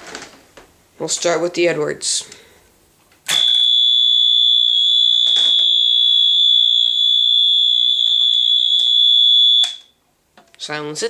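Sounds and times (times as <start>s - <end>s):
high-pitched buzzer tone: 3.3s - 9.9s.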